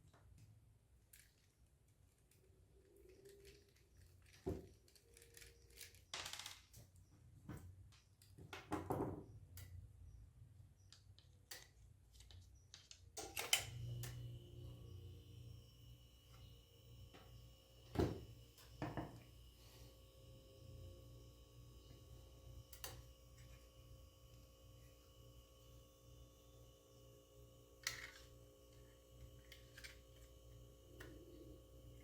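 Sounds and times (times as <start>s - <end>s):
small parts and tool clicking: 0.1s - 7.1s, 10.8s - 14.2s, 27.8s - 30.4s.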